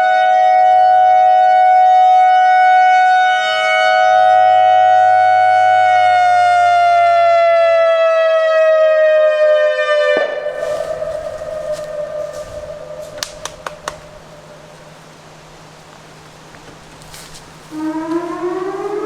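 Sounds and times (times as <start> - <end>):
faint siren: 0.0 - 15.8, 17.1 - 19.0
electronic siren tone: 0.2 - 13.1, 17.7 - 19.0.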